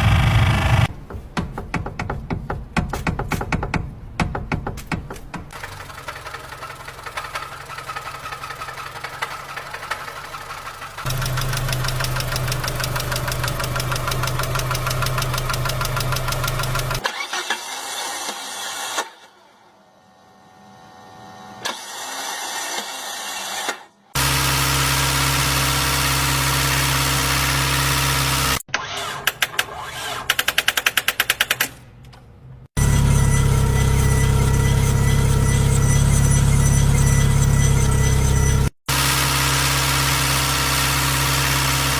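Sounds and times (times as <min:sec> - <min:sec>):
car engine running: 0:00.0 - 0:00.9, 0:05.6 - 0:17.0
engine ticking or knocking: 0:11.1 - 0:17.0.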